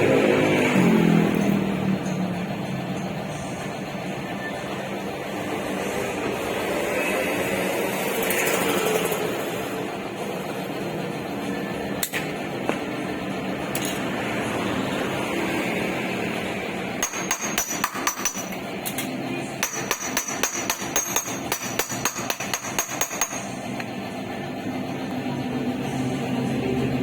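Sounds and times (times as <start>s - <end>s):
hammer striking sheet metal: 17.0s - 18.6s, 19.6s - 23.6s.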